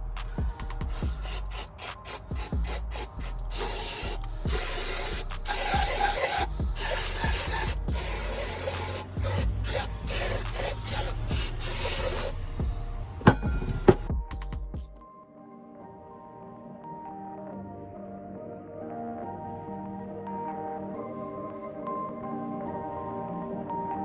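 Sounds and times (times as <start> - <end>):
spray can hissing: 0.9 - 12.5.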